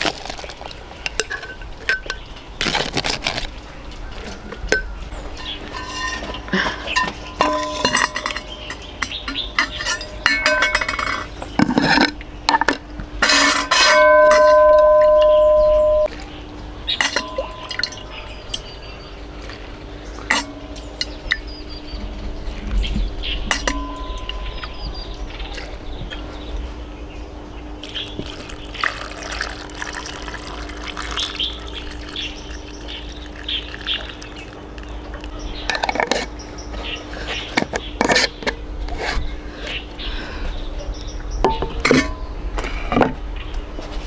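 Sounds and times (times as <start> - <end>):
spoons and dishes clinking: 1.1 - 3.5, 4.8 - 16.1, 17.0 - 18.7, 27.9 - 34.7
loud steady tone: 14.0 - 16.1.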